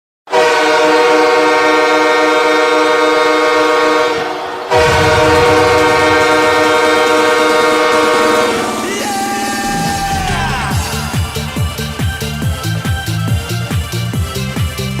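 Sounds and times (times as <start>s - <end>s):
goal horn blasting: 0.3s - 13.9s
low rumble: 4.7s - 14.0s.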